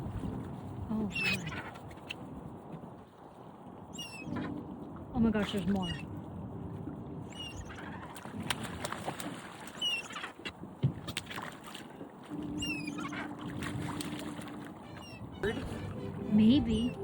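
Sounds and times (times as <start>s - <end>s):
water and boat noise: 0.0s - 17.0s
seabirds calling: 0.9s - 2.2s, 3.8s - 6.3s, 7.1s - 10.4s, 12.3s - 17.0s.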